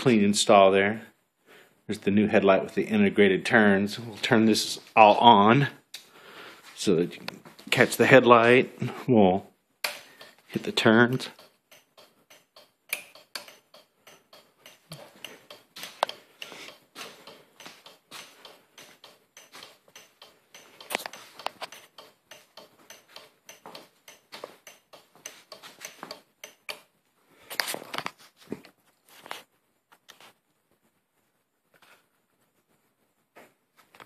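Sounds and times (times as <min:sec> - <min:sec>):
turn signal flasher ticking: 0:11.3 - 0:26.9.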